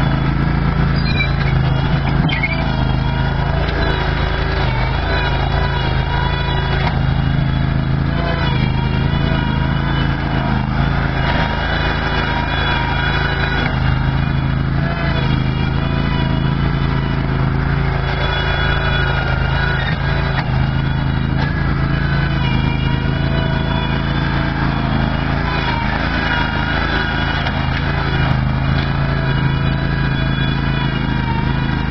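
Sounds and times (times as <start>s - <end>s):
backhoe engine droning: 0.0s - 31.9s.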